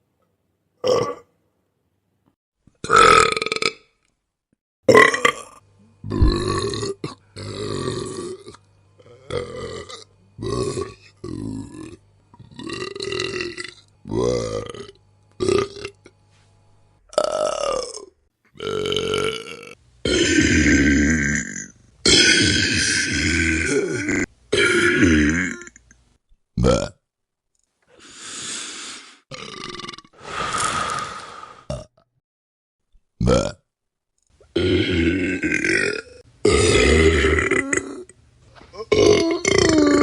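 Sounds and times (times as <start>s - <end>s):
person burping: 0.8s - 1.3s, 2.8s - 3.9s, 4.9s - 16.2s, 17.1s - 26.0s, 26.6s - 27.0s, 29.3s - 30.2s, 31.7s - 32.1s, 33.2s - 33.6s, 34.5s - 40.0s.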